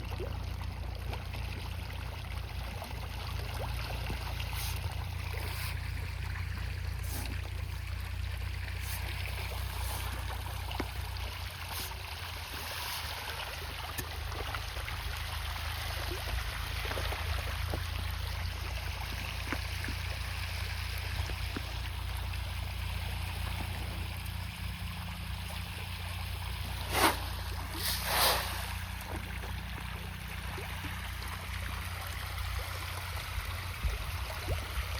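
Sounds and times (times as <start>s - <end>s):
low hum: 0.0s - 15.2s
water running and trickling: 0.0s - 34.9s.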